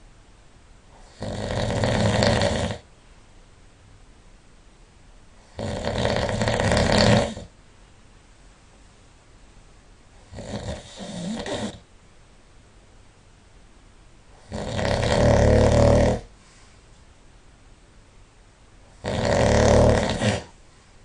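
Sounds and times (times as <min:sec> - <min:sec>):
person snoring: 0:00.9 - 0:02.9, 0:05.4 - 0:07.5, 0:10.3 - 0:11.8, 0:14.4 - 0:16.3, 0:19.0 - 0:20.5
quiet breathing: 0:16.2 - 0:17.1, 0:20.1 - 0:21.0.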